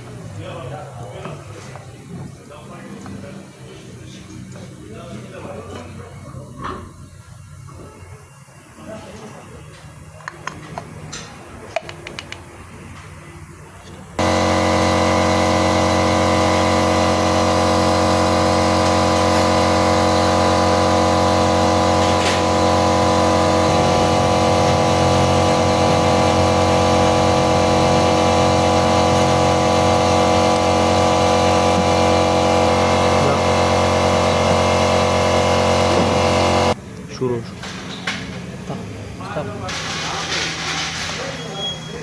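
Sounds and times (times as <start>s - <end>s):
motor humming with whine: 13.8s - 36.8s.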